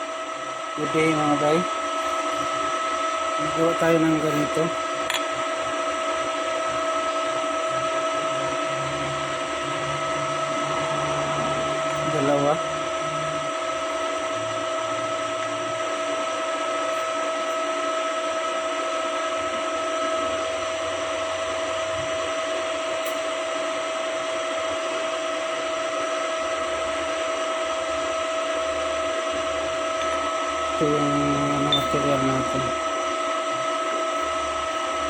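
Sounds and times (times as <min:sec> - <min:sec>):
metal lathe whining: 0:05.6 - 0:21.2, 0:26.5 - 0:35.0.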